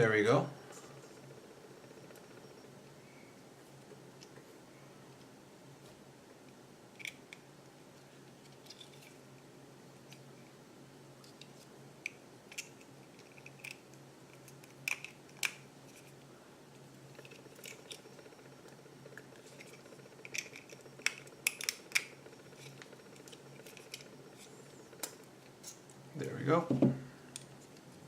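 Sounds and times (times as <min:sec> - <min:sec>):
faint low hum: 0:00.0 - 0:28.0
plastic parts clicking and tapping: 0:11.3 - 0:15.6, 0:17.2 - 0:25.2.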